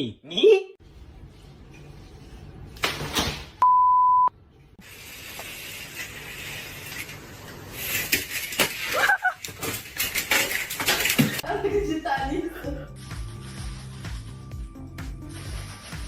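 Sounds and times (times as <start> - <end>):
electronic censor bleep: 3.6 - 4.3.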